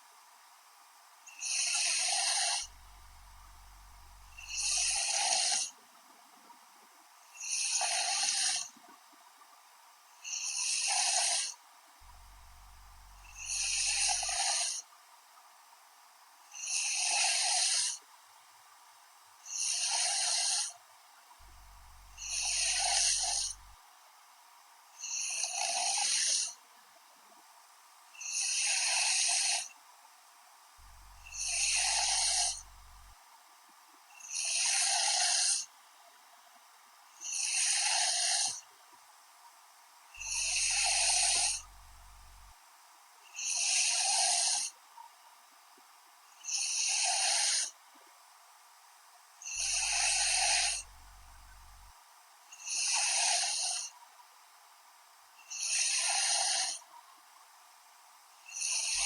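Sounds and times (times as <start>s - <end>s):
person snoring: 1.4s - 2.8s, 4.1s - 5.7s, 7.4s - 8.7s, 10.4s - 11.5s, 12.5s - 14.8s, 16.6s - 18.0s, 19.5s - 20.7s, 22.0s - 23.8s, 25.0s - 26.5s, 28.2s - 29.7s, 31.1s - 33.1s, 34.2s - 35.6s, 37.2s - 38.6s, 40.2s - 42.5s, 43.4s - 44.7s, 46.6s - 47.7s, 49.5s - 51.9s, 55.5s - 56.8s, 58.5s - 59.0s.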